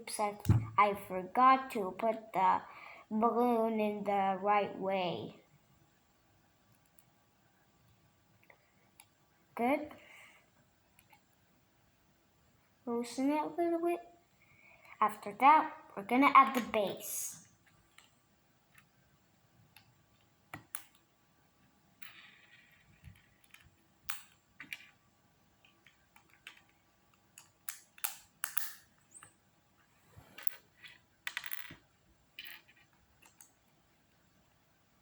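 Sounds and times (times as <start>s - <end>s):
plastic pieces clicking together: 22.0s - 25.0s, 25.6s - 29.3s, 32.4s - 33.6s.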